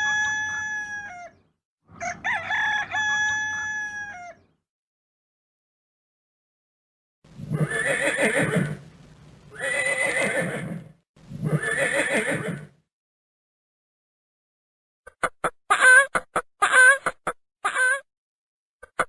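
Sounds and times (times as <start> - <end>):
fowl clucking or quacking: 15.1 - 18.0.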